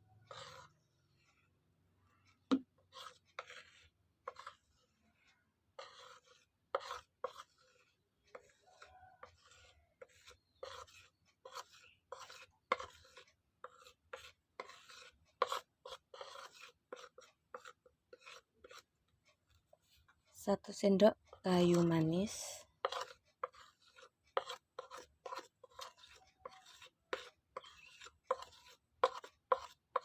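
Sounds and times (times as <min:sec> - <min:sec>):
spoon scraping powder: 0:00.0 - 0:30.0.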